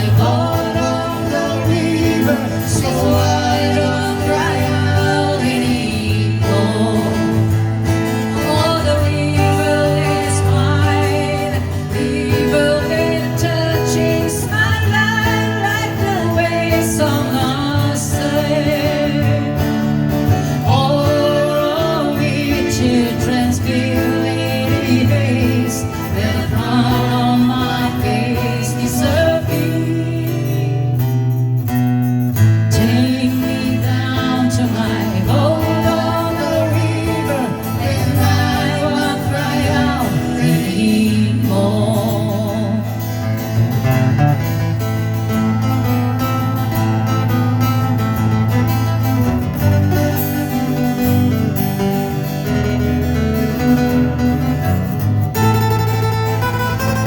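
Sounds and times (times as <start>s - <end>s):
voices singing melody: 0.0s - 31.3s, 32.6s - 43.2s
acoustic guitars playing: 0.0s - 57.0s.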